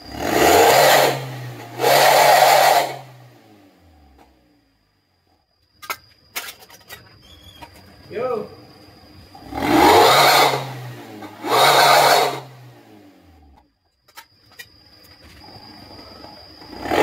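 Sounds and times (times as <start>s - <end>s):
car engine revving raspy exhaust: 0.0s - 4.2s, 9.4s - 13.6s, 16.7s - 17.0s.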